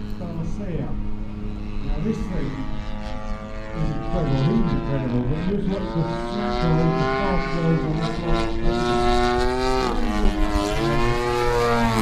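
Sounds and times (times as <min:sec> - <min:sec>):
model plane petrol engine: 0:00.0 - 0:12.0.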